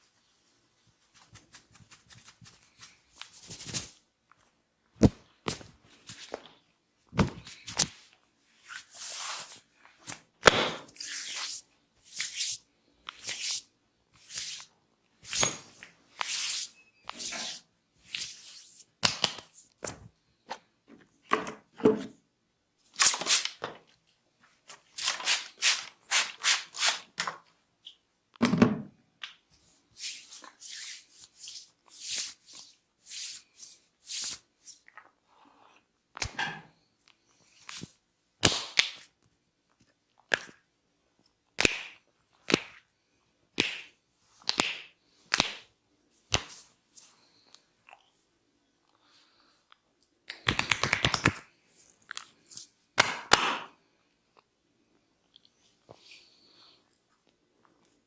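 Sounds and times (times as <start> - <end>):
hands rubbing skin: 0.9 - 4.0, 10.9 - 15.4, 16.1 - 20.0, 30.0 - 34.8, 46.3 - 47.1
slaps on skin: 41.6 - 42.7, 43.6 - 43.9.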